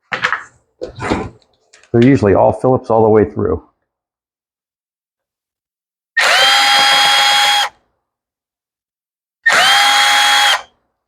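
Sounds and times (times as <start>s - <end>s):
cordless drill motor whining: 6.2s - 7.8s, 9.4s - 10.7s.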